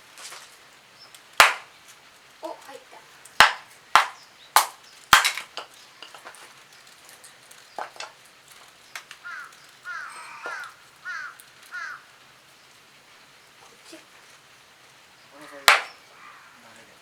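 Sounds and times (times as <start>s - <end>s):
bird calling: 8.8s - 12.8s, 15.1s - 17.0s.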